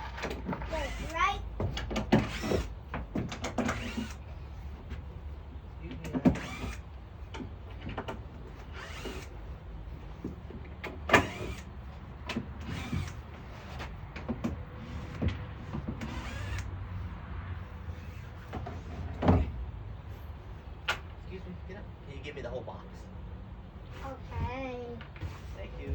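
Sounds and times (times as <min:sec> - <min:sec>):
power drill driving screws: 0:00.7 - 0:01.2, 0:01.9 - 0:04.2, 0:06.2 - 0:06.9, 0:08.6 - 0:09.4, 0:11.1 - 0:11.7, 0:12.6 - 0:13.8, 0:15.9 - 0:16.7.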